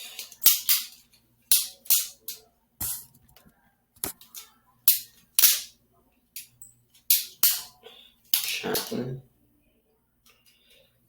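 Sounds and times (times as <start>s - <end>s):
butterfly knife handles clacking: 8.3s - 9.0s.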